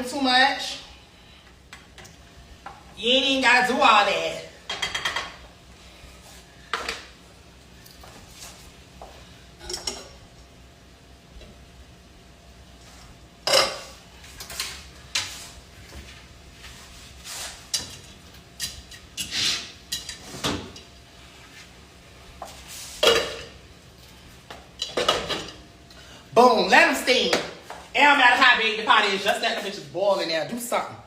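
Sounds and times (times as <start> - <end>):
pots and utensils clattering: 4.7 - 5.4, 9.6 - 10.2, 13.4 - 15.3, 17.7 - 20.9, 23.0 - 23.6, 24.7 - 25.6.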